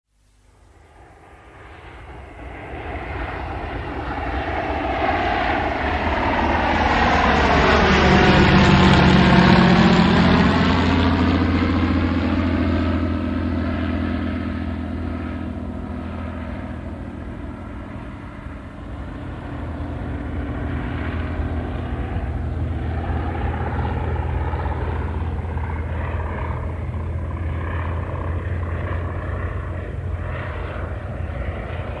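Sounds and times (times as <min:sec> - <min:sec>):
airplane engine passing overhead: 0:00.3 - 0:32.0.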